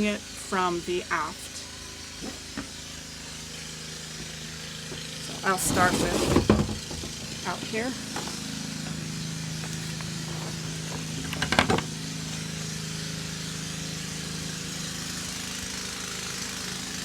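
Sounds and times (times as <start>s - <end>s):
low mechanical hum: 0.0s - 17.0s
clatter of clicks and knocks: 10.9s - 11.9s.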